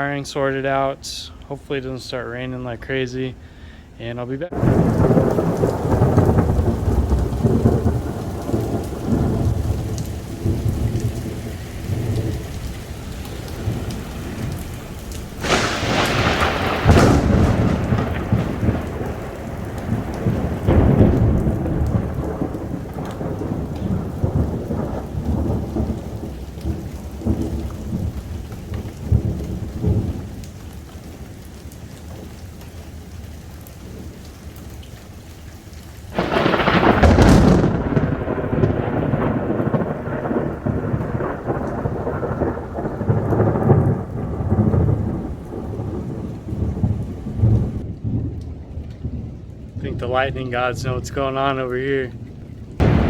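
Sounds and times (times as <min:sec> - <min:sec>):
falling rain: 0:00.0 - 0:53.0
sharp thunder crack: 0:04.5 - 0:30.2, 0:36.1 - 0:48.4, 0:52.1 - 0:53.0
rolling thunder: 0:04.5 - 0:30.6, 0:36.1 - 0:53.0.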